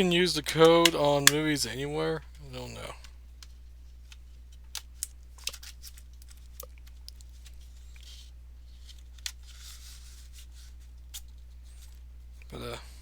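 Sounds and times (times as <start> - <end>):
steady low hum: 0.0 - 13.0
plastic case clicks: 0.6 - 1.4
paper and packaging rustling: 3.5 - 12.1.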